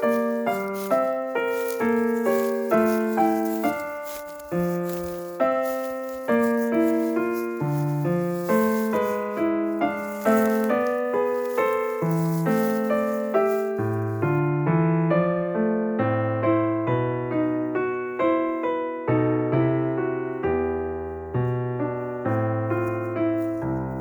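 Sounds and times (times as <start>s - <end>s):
piano music: 0.0s - 24.0s.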